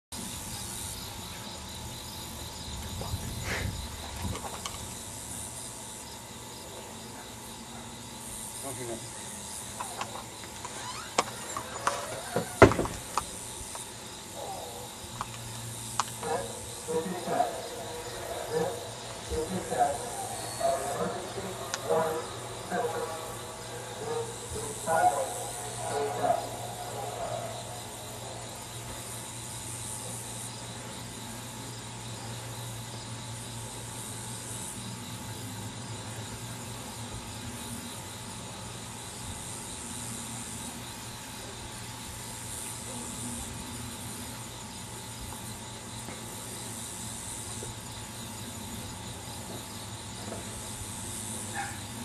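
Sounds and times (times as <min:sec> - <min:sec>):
constant low hum: 0:00.2 - 0:52.0
insects hissing: 0:00.2 - 0:52.0
thump: 0:12.3 - 0:13.0.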